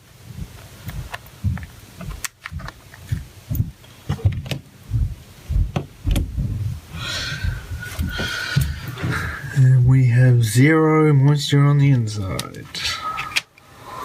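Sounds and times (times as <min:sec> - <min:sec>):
low bumps and rubbing: 0:00.2 - 0:09.4.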